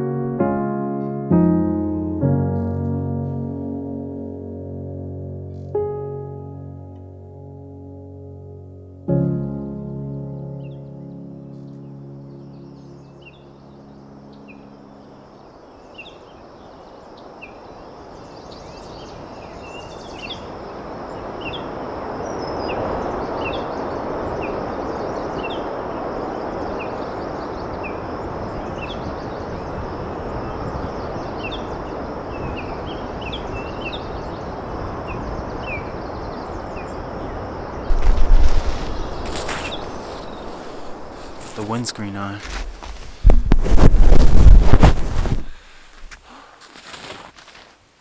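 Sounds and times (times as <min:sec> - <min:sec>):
steady rushing noise: 0:37.9 - 0:46.2
low blast on microphone: 0:37.9 - 0:46.6
small birds chirping: 0:37.9 - 0:47.5.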